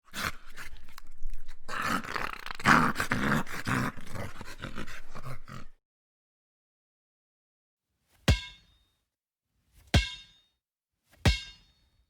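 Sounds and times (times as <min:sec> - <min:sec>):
dog growling: 0:00.0 - 0:05.8.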